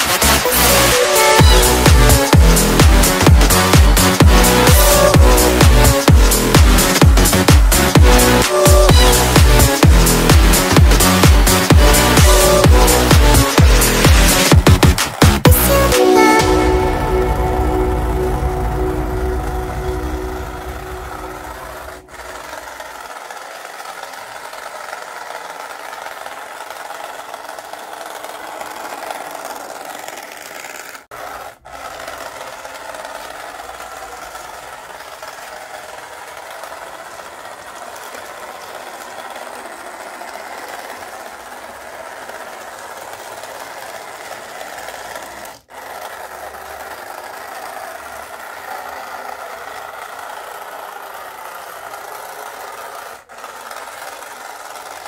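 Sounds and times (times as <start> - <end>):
small electric motors whirring: 0.0 - 17.6, 18.4 - 55.0.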